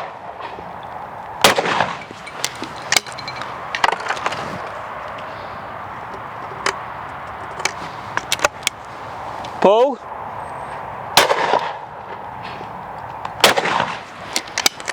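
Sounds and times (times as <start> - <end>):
shotgun firing: 1.4 - 2.0, 13.4 - 14.0.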